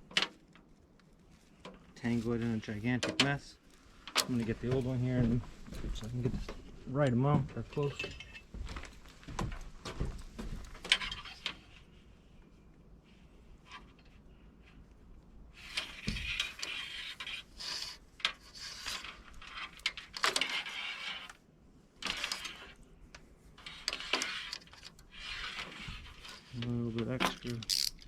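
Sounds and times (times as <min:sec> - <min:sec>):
window screen mesh scraping: 0:10.2 - 0:12.2, 0:15.5 - 0:21.4, 0:22.0 - 0:28.0.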